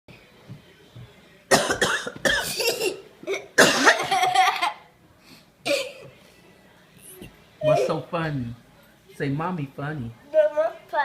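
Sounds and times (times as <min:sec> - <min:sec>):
woman coughing: 0:01.5 - 0:04.5, 0:05.6 - 0:06.1, 0:07.7 - 0:08.0.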